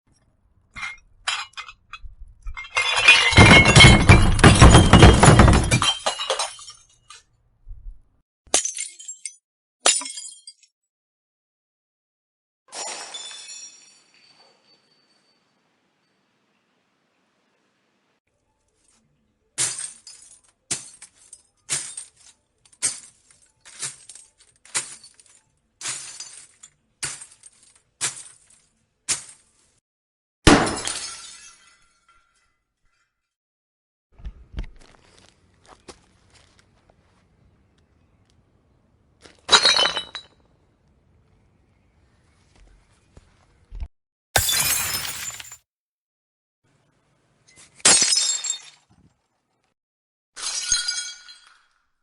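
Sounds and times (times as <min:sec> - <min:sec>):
glass crashing and breaking: 0:02.5 - 0:07.1, 0:12.7 - 0:14.3, 0:30.5 - 0:32.4, 0:39.5 - 0:40.3, 0:44.4 - 0:45.7, 0:47.8 - 0:48.9
falling glass shards tinkling: 0:02.6 - 0:07.2, 0:12.7 - 0:15.4, 0:19.6 - 0:29.4, 0:44.4 - 0:45.6.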